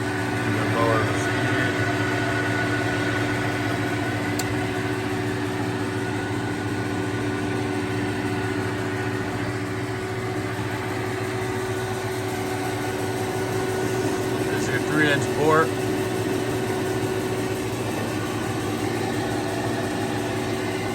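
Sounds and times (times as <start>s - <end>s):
lathe motor humming: 0.0s - 20.9s.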